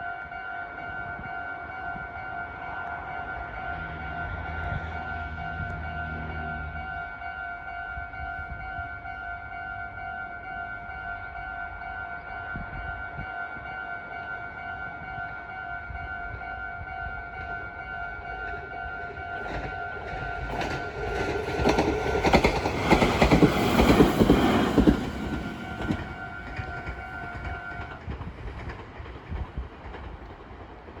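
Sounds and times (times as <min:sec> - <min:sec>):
train wheels clacking on rails: 0:18.4 - 0:31.0.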